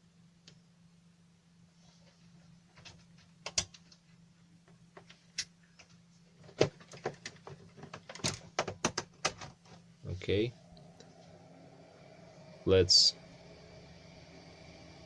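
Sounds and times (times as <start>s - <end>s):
faint low hum: 0.0s - 15.0s
hardware clicking and knocking: 5.8s - 9.8s.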